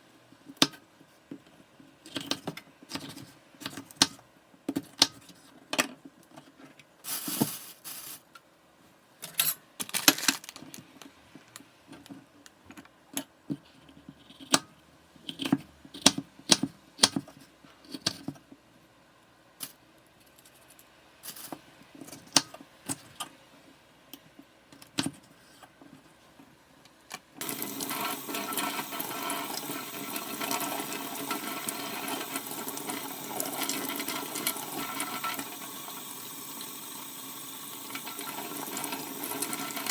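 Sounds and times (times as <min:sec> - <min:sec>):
running water rushing: 0:27.4 - 0:39.9.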